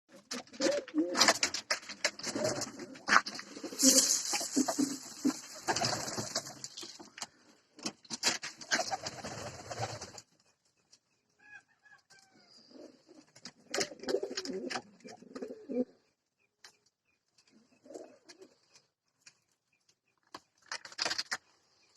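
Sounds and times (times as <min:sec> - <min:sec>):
pigeons cooing: 0:00.2 - 0:01.5, 0:02.2 - 0:06.6, 0:12.5 - 0:16.0, 0:17.8 - 0:18.6
rustling: 0:01.6 - 0:07.6.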